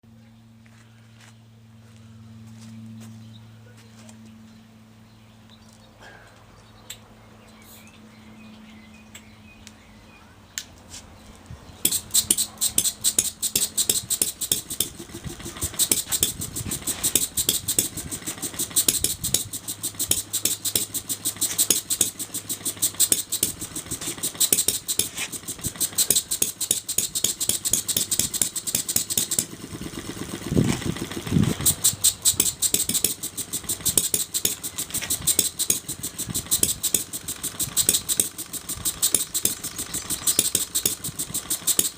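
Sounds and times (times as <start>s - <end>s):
model engine exhaust pops: 11.8s - 41.9s.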